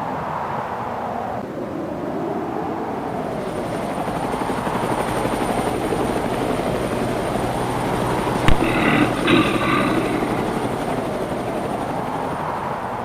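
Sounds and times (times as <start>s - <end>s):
helicopter rotor fluttering: 3.2s - 13.0s
thin high whine: 3.6s - 12.4s.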